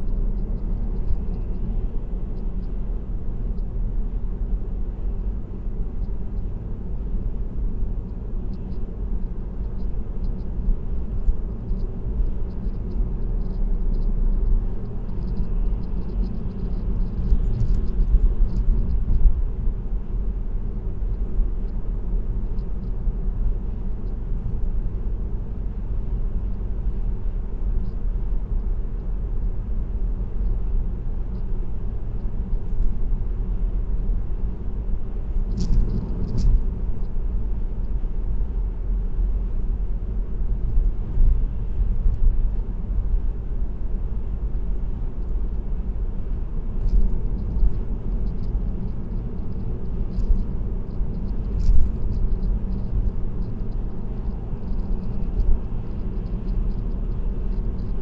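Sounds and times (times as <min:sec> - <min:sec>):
car road rumble from cabin: 0:00.0 - 0:58.0.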